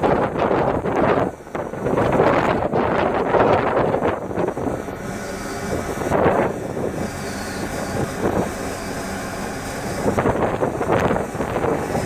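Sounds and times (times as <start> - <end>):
steady low rumble: 0.0 - 12.0
wind buffeting microphone: 0.0 - 12.0.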